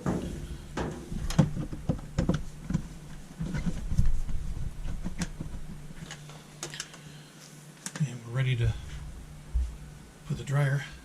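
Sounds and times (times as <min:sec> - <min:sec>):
handling clicks and knocks: 0:00.0 - 0:07.0.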